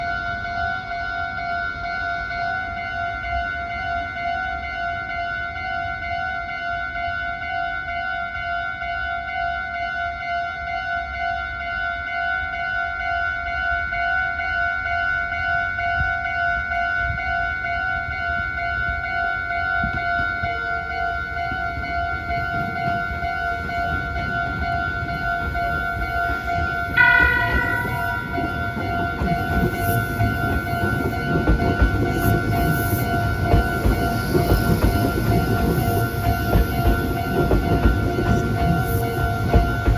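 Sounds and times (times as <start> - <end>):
train wheels running: 21.3 - 39.9
level crossing alarm dinging: 24.0 - 39.9
train horn: 26.9 - 33.4.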